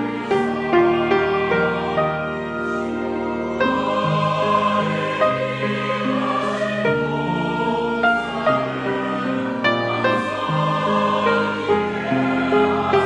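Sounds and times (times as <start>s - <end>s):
choir singing a hymn: 0.0s - 13.0s.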